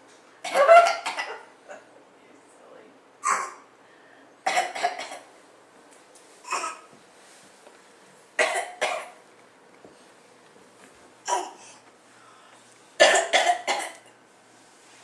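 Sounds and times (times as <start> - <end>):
child fake coughing: 0.4 - 1.9, 3.2 - 3.7, 4.4 - 5.3, 6.4 - 6.9, 8.4 - 9.2, 11.2 - 11.7, 13.0 - 14.0.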